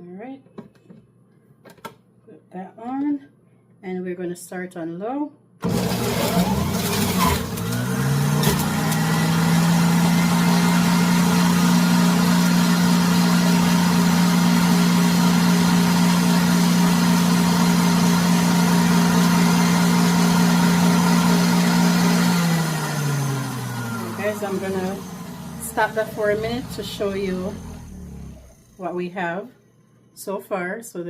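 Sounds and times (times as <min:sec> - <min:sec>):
juicer motor humming: 0:05.6 - 0:28.9.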